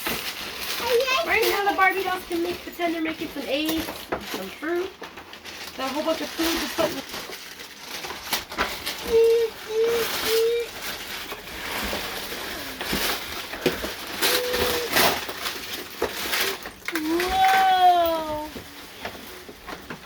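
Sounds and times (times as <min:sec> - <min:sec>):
packaging rustling and crinkling: 0:00.0 - 0:20.0.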